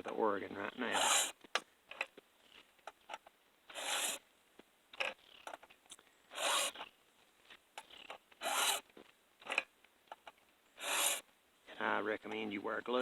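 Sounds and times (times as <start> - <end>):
file rasping on chainsaw chain: 0.8 - 1.4, 3.7 - 4.2, 6.3 - 6.9, 7.8 - 8.9, 10.8 - 11.2.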